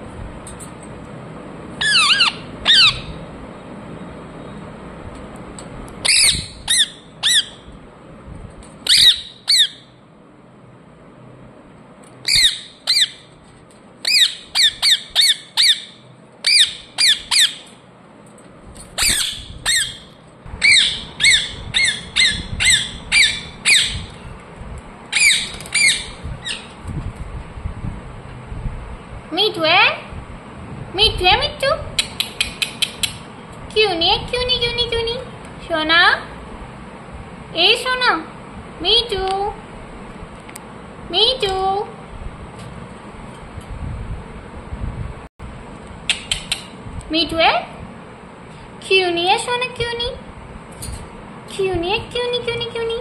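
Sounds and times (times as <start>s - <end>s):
parrot squawking: 1.8s - 3.2s, 6.0s - 7.7s, 8.9s - 9.9s, 12.2s - 13.3s, 14.0s - 17.7s, 19.0s - 24.1s, 25.1s - 26.7s.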